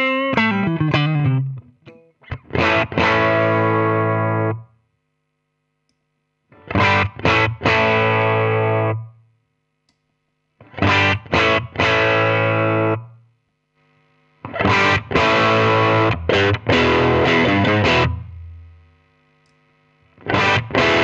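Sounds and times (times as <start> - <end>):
distorted electric guitar: 0.0 - 4.6, 6.5 - 9.1, 10.6 - 13.2, 13.9 - 19.1, 20.1 - 21.0.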